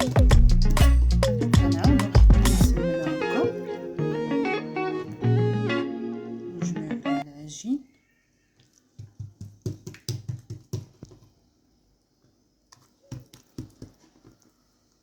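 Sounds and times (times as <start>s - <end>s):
hands slapping dough: 8.9s - 11.4s, 12.7s - 14.5s.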